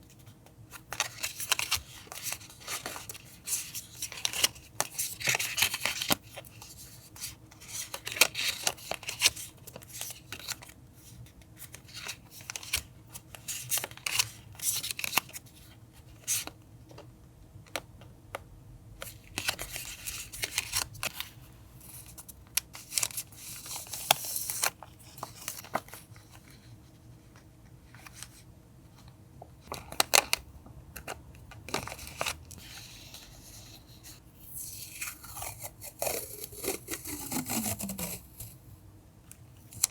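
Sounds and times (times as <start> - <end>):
paper rustling: 31.7 - 38.6
scissors cutting paper: 34.5 - 38.6.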